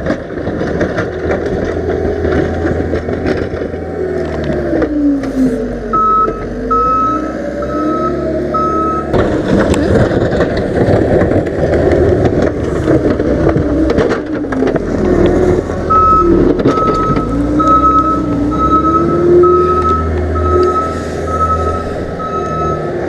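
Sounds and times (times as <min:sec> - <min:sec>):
diesel engine running under load: 0:00.0 - 0:23.0
reversing alarm beeping: 0:05.9 - 0:09.1, 0:15.9 - 0:23.0
sharp clicks and clatter: 0:09.1 - 0:17.4.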